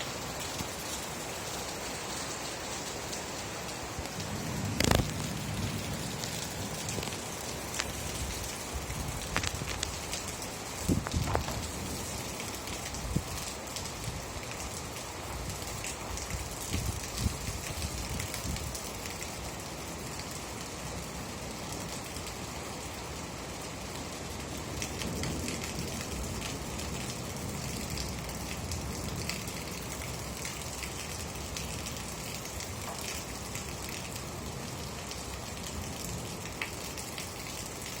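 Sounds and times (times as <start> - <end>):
steady rain falling: 0.0 - 38.0.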